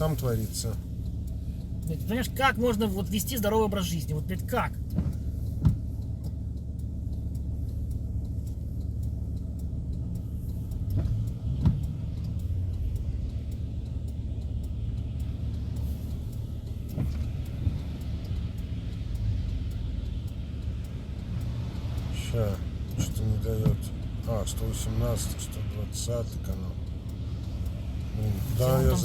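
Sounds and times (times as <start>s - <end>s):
low engine and road rumble: 0.0s - 29.0s.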